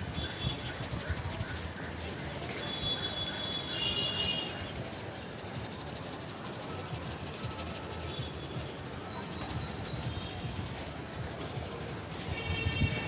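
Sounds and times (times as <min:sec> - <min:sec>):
hands rubbing hair and scalp: 0:04.6 - 0:13.0.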